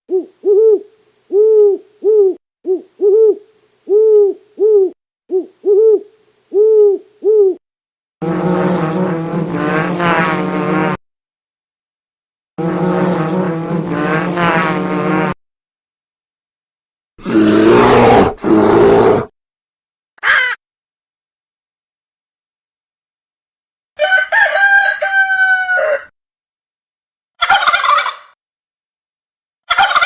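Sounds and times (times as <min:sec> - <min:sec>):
owl hooting: 0:00.0 - 0:07.6
large animal roaring: 0:17.2 - 0:19.3.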